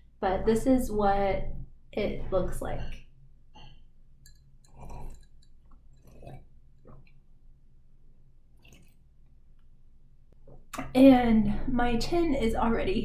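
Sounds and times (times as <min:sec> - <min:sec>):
faint low hum: 0:00.0 - 0:13.0
person slurping water: 0:04.7 - 0:05.4, 0:06.0 - 0:07.0.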